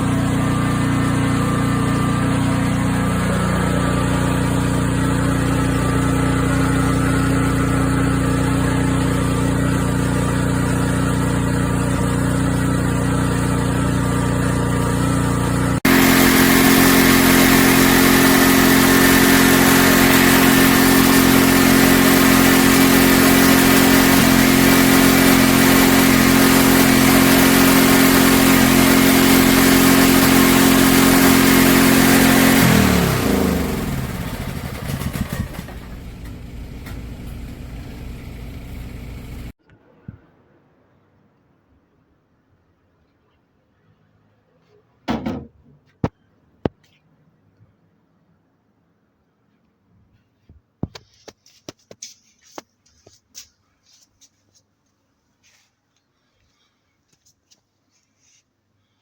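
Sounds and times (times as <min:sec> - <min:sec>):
generator engine running: 0:00.0 - 0:39.6.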